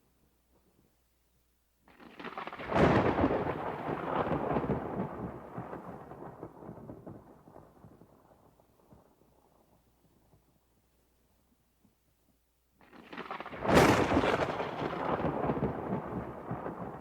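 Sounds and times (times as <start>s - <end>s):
thunderclap crackling and rumbling: 1.9s - 10.4s, 12.8s - 17.0s.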